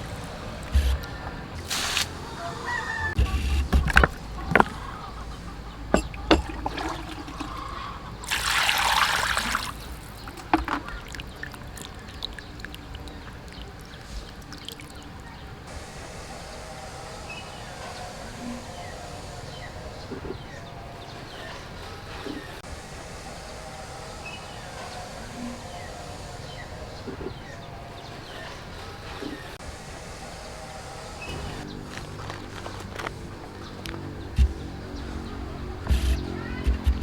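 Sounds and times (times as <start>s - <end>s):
water pouring and trickling: 3.7s - 4.9s, 5.8s - 15.8s.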